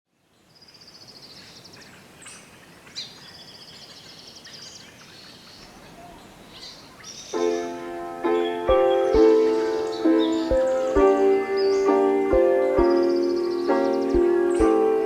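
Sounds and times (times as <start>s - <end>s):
faint outdoor hiss: 0.1s - 15.0s
small songbirds trilling: 0.5s - 15.0s
sharp bird chirp: 8.3s - 15.0s.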